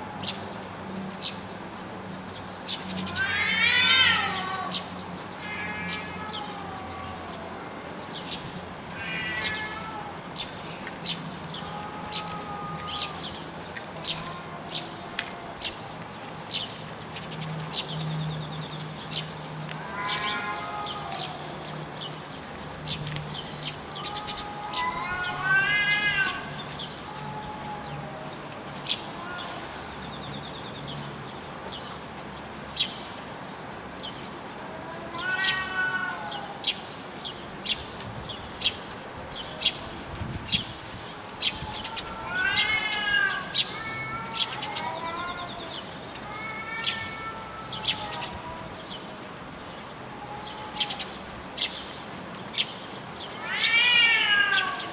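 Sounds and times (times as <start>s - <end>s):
cats yowling: 2.9s - 16.6s, 19.1s - 30.2s, 34.6s - 37.0s, 39.3s - 51.8s, 53.1s - 54.9s.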